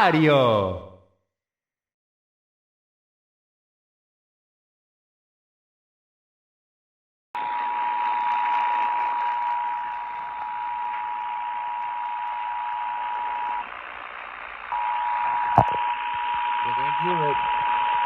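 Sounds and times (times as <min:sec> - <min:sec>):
two-tone alert signal: 0:15.6 - 0:15.8.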